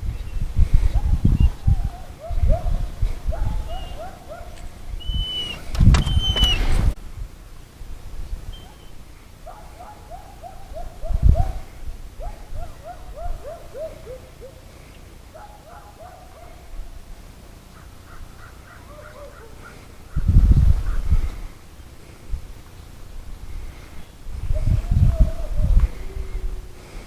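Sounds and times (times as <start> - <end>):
distant dog yelping: 1.0 - 6.7, 9.5 - 11.6, 12.2 - 14.6, 15.4 - 16.7, 18.1 - 20.2, 24.5 - 26.5.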